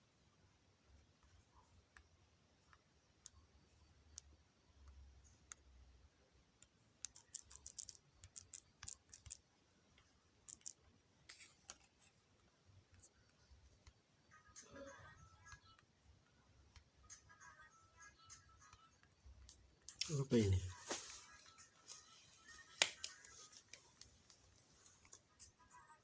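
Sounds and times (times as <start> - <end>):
faint irregular clicks and taps: 1.0 - 5.8, 6.5 - 14.6, 22.8 - 25.7.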